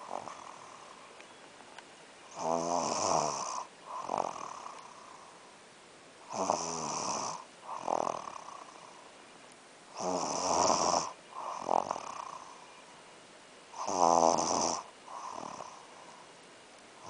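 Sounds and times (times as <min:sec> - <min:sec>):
person snoring: 0:00.0 - 0:00.9, 0:02.3 - 0:05.2, 0:06.3 - 0:08.8, 0:10.0 - 0:12.5, 0:13.8 - 0:15.8
quiet breathing: 0:00.0 - 0:01.3, 0:02.2 - 0:09.3, 0:10.9 - 0:13.0, 0:13.7 - 0:17.0.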